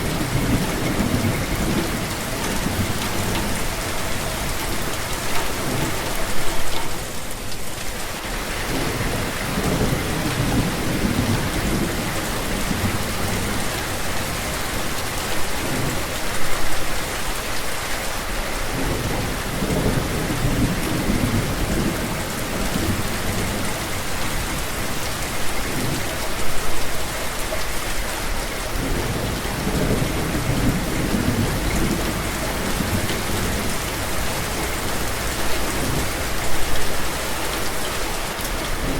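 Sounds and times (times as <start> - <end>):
heavy rain falling: 0.0 - 38.9
rolling thunder: 28.8 - 36.8.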